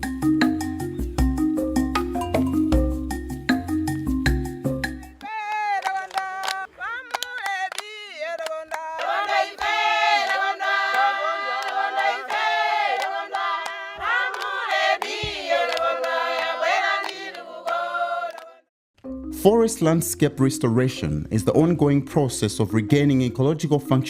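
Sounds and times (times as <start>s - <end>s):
group singing in chorus: 7.6s - 18.7s.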